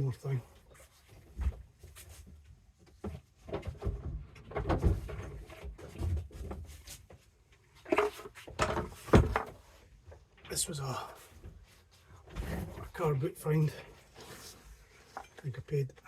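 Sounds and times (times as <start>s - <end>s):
wooden tool box knocks and scrapes: 7.9s - 9.6s.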